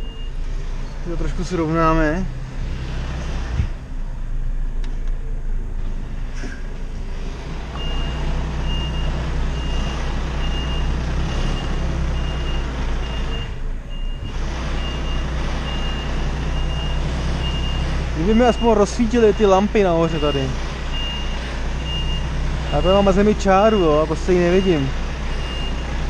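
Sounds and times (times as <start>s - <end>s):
reversing alarm beeping: 0.0s - 0.4s, 7.8s - 26.0s
diesel truck engine running: 0.0s - 26.0s.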